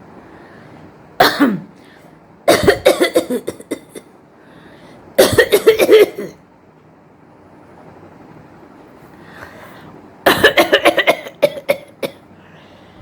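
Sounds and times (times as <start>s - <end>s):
woman coughing: 1.2s - 1.7s, 2.5s - 4.1s, 5.2s - 6.4s, 10.2s - 12.2s.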